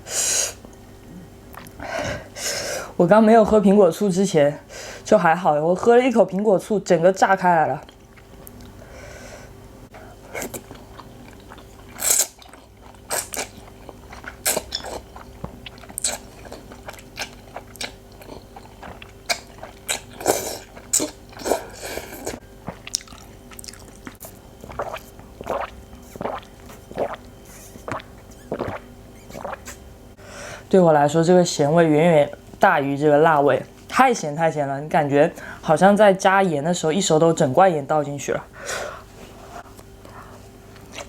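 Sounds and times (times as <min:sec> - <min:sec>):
person chewing noodles: 0:01.5 - 0:01.8, 0:10.0 - 0:29.8, 0:39.7 - 0:41.0.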